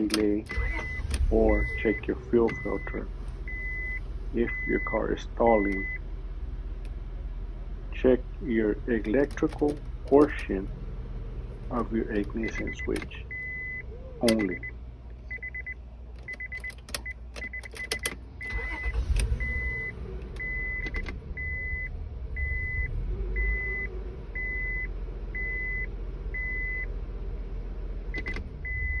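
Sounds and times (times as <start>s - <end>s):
ignition key clicks: 0.0s - 4.7s, 5.6s - 6.0s, 8.9s - 10.7s, 11.6s - 21.2s, 28.1s - 28.9s
dashboard warning chime beeping: 0.0s - 6.0s, 11.7s - 26.9s, 28.1s - 29.0s
car engine cranking and idling: 0.0s - 29.0s.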